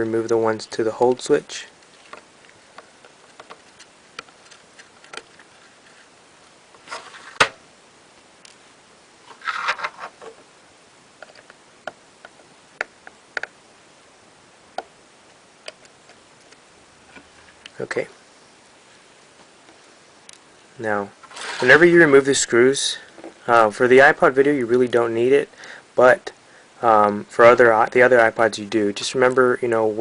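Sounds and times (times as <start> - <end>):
scraping rustles: 6.8 - 7.5, 9.2 - 10.4, 21.2 - 22.3.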